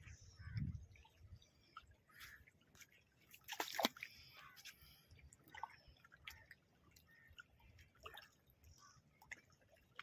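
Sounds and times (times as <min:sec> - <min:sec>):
water splashes and drips: 0:00.0 - 0:10.0.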